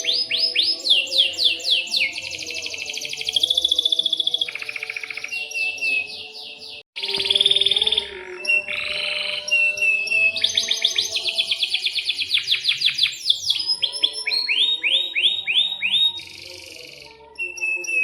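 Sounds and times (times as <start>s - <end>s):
canary singing: 0.0s - 18.0s.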